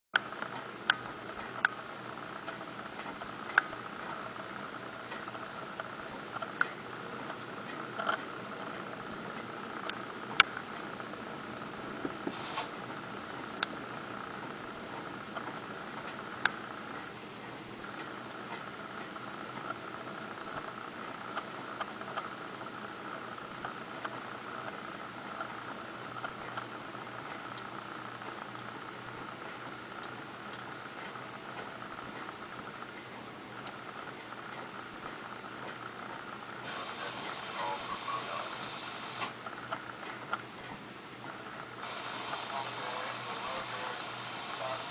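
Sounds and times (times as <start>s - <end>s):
wind and blowing snow hiss: 41.8s - 44.9s.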